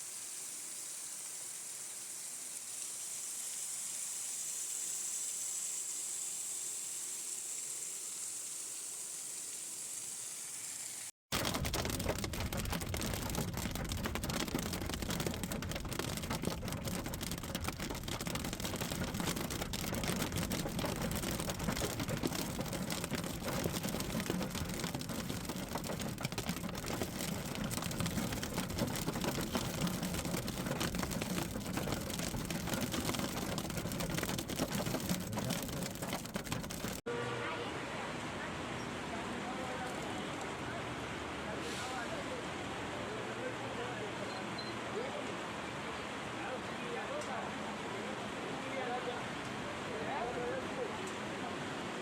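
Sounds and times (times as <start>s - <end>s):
heavy rain falling: 11.3s - 37.0s.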